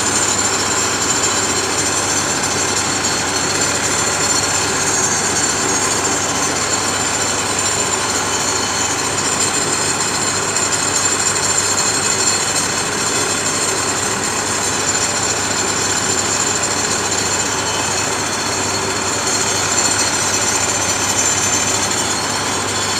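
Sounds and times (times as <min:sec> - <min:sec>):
pump engine running steadily: 0:00.0 - 0:22.9.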